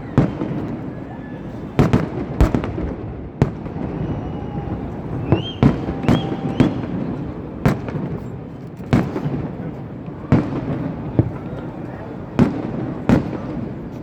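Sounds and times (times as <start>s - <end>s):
fireworks bangs: 0.0s - 14.0s
firework whistling: 3.6s - 7.4s.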